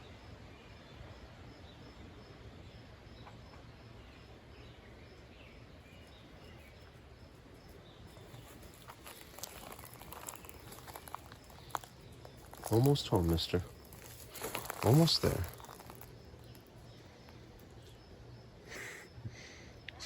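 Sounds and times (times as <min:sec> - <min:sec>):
insect chirping: 0:00.0 - 0:20.0
footsteps on dirt trail: 0:08.1 - 0:17.9.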